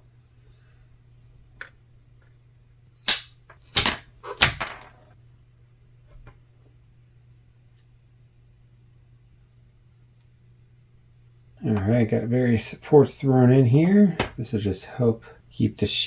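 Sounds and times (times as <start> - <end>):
duct tape ripping: 3.1 - 3.8.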